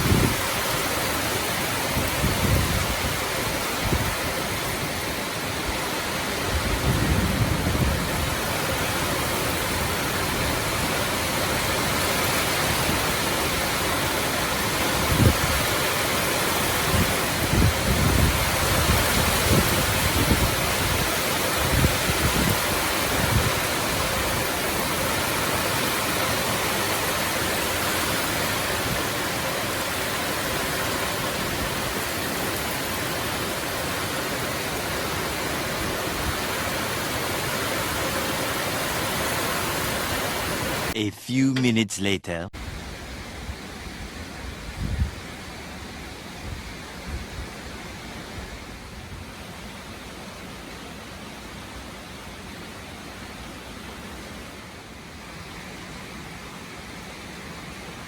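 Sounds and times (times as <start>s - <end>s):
heavy rain pouring: 0.0s - 41.0s.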